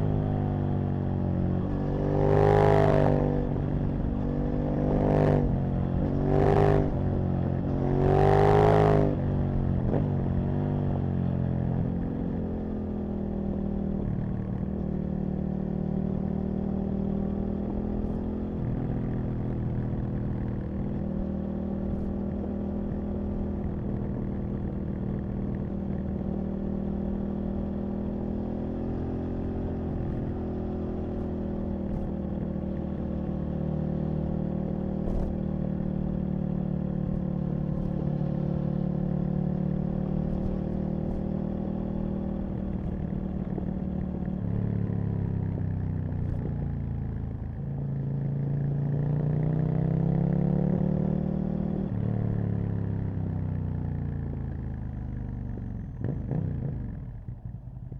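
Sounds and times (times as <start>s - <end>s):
motorcycle engine revving: 22.8s - 47.9s, 55.0s - 57.9s.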